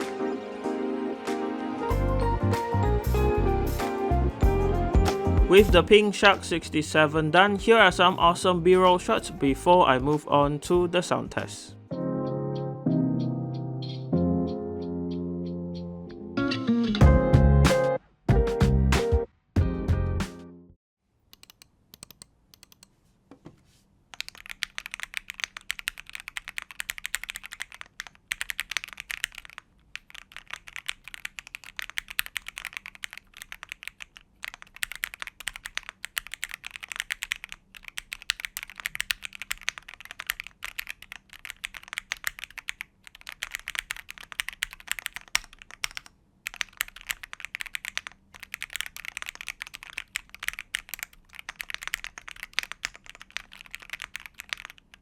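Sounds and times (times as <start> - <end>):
keyboard keystroke clacks: 24.2 - 55.0.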